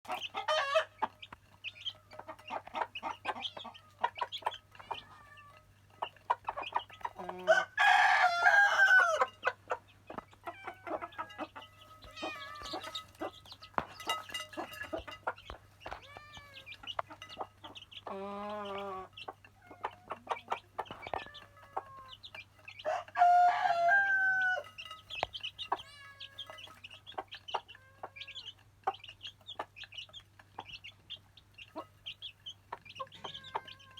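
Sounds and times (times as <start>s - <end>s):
chickens clucking: 0.0s - 33.9s
rooster crowing: 7.4s - 9.3s, 22.8s - 24.7s.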